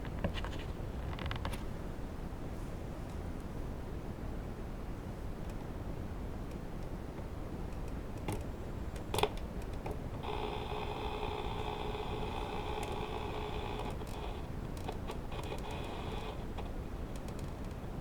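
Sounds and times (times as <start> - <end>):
radio static hiss: 10.2 - 14.6, 15.2 - 16.7
steady buzzing tone: 10.2 - 16.6.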